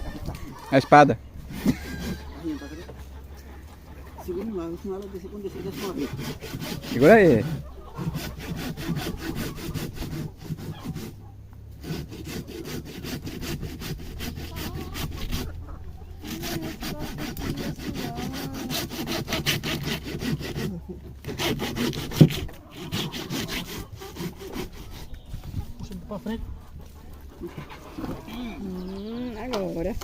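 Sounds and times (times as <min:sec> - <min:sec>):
saw cutting through carcass: 0:01.5 - 0:02.9, 0:05.3 - 0:11.2, 0:11.8 - 0:15.6, 0:16.2 - 0:25.4.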